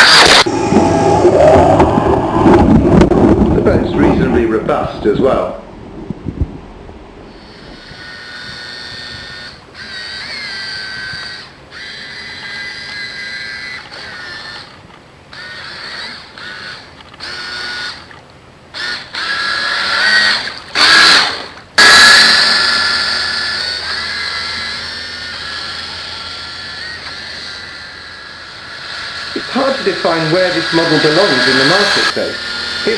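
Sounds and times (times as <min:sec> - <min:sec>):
toy boat electric motors whining: 0:00.0 - 0:02.6, 0:07.3 - 0:32.9
rushing noise: 0:00.0 - 0:07.4.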